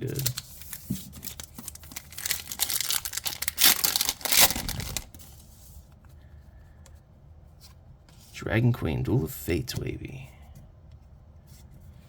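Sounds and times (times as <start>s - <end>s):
wrapper crinkling and tearing: 0.0s - 5.4s
cards being handled: 0.0s - 5.5s.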